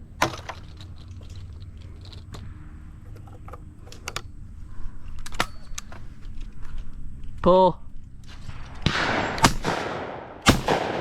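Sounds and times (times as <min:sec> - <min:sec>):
shotgun shot: 0:08.3 - 0:11.0.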